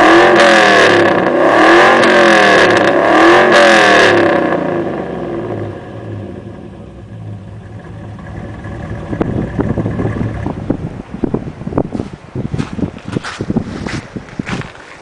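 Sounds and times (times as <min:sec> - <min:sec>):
car engine revving and idling: 0:00.0 - 0:11.2
wind buffeting microphone: 0:06.5 - 0:14.8.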